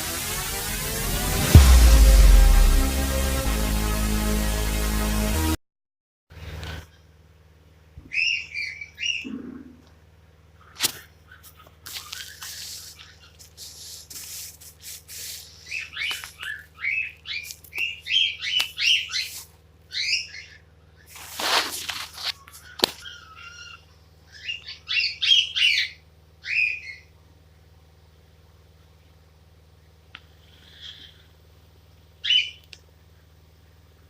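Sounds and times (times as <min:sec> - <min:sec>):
cockatiel chirping: 0:08.1 - 0:09.3, 0:23.0 - 0:27.0, 0:32.2 - 0:32.6
rustling: 0:21.1 - 0:23.0.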